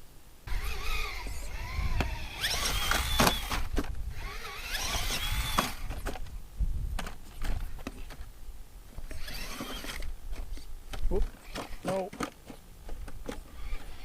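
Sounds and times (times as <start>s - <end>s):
electric motor whine: 0.5s - 6.2s, 9.0s - 10.1s.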